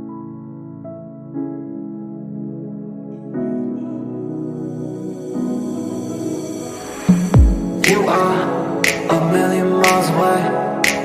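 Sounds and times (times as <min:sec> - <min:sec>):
pop music with slow beat: 0:04.1 - 0:11.0.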